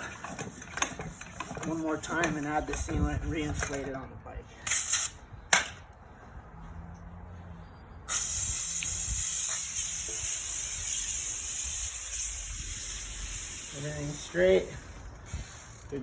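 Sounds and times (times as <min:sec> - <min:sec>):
air hissing from tire valve: 0:04.6 - 0:05.2, 0:08.1 - 0:16.0
tire sealant spitting: 0:08.1 - 0:16.0.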